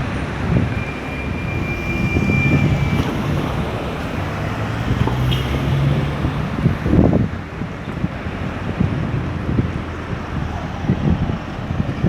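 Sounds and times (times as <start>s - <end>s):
vehicle engine humming: 0.0s - 12.0s
wind buffeting microphone: 0.0s - 12.0s
thin high whine: 0.1s - 4.8s.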